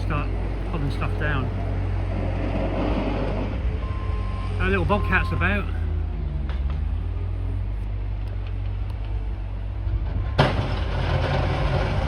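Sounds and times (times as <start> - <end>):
low engine rumble: 0.0 - 12.0.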